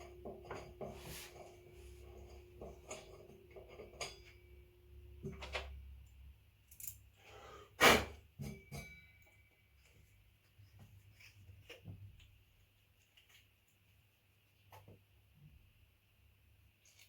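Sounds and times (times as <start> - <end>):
faint metallic ring: 0.0 - 4.8, 8.4 - 10.1.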